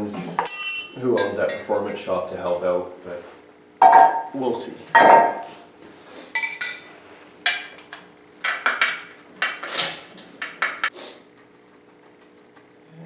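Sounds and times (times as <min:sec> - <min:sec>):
metal tools clinking and clanking: 0:00.4 - 0:01.6, 0:06.3 - 0:07.6.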